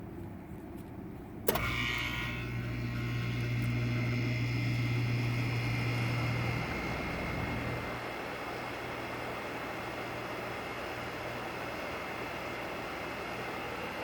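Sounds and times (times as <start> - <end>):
compressor humming: 1.0 - 14.0
heat pump switch click: 1.5 - 7.9
faint high whine: 1.5 - 14.0.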